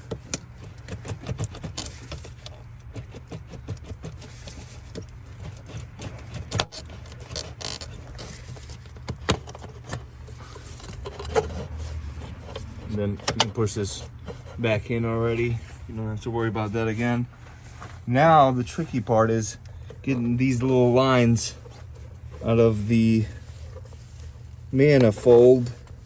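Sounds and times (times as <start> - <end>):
hard plastic clicking and rattling: 0.0 - 14.9
steady low hum: 0.0 - 26.0.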